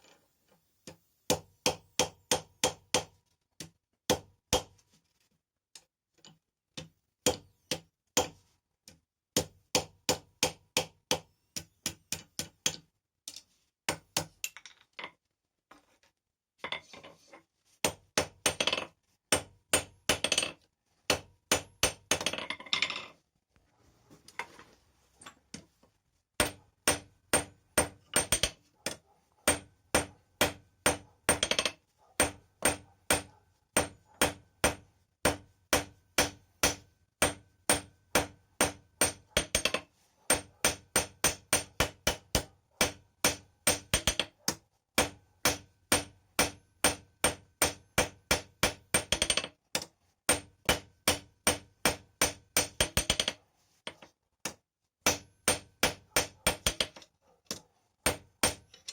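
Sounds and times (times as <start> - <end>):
hammer striking steel on anvil: 26.4 - 28.6, 29.5 - 44.3, 45.0 - 53.3, 55.1 - 56.9.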